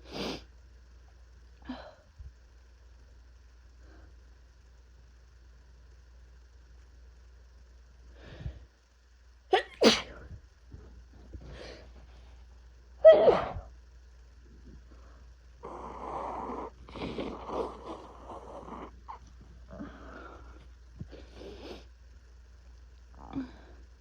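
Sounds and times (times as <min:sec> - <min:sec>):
person sneezing: 0:09.5 - 0:10.2, 0:13.0 - 0:13.6
breathy noise: 0:14.6 - 0:21.9, 0:23.1 - 0:24.0.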